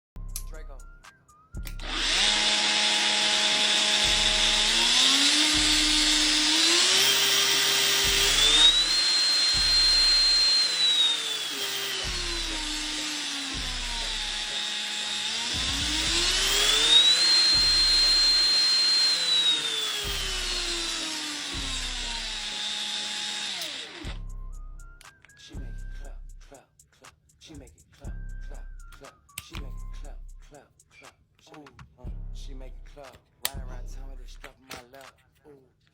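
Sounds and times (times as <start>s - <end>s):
angle grinder running: 1.8s - 24.2s.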